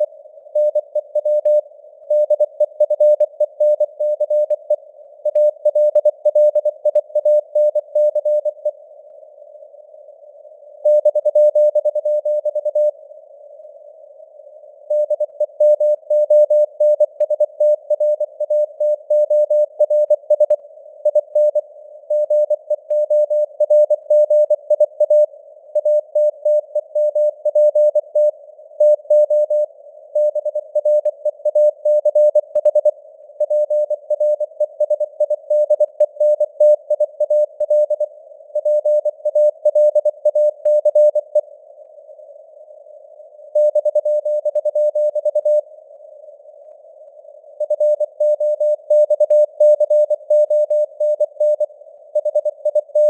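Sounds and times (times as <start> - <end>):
morse code beeps: 10.9 - 12.9.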